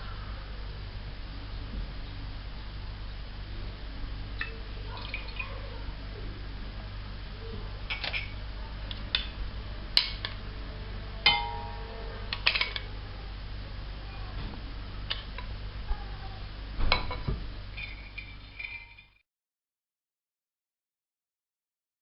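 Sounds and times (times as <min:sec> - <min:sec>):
steady low hum: 0:00.0 - 0:19.2
dishes and utensils clinking: 0:07.9 - 0:08.4, 0:11.3 - 0:12.8, 0:16.9 - 0:19.2.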